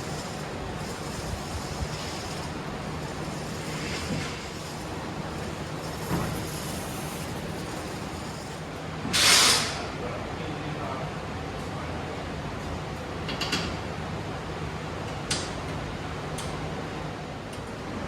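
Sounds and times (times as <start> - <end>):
short loud hiss: 9.1 - 9.8.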